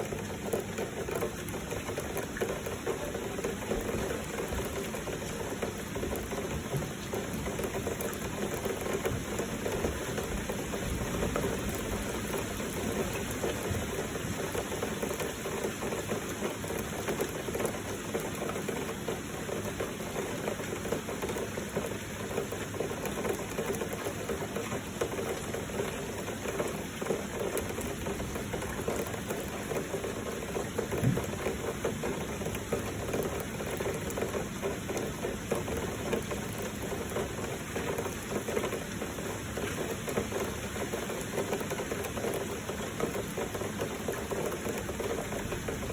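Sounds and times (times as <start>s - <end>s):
heavy rain falling: 0.0s - 45.9s
soft low thump: 31.0s - 31.3s.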